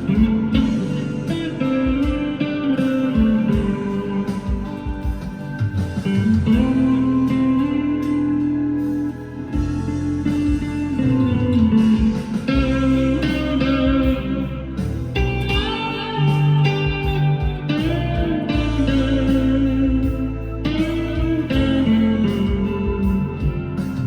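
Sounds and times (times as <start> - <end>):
electric guitar with reverb: 0.0 - 24.0.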